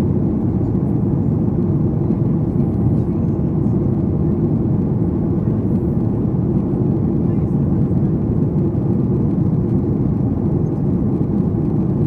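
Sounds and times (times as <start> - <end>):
airplane cabin rumble: 0.0 - 12.0.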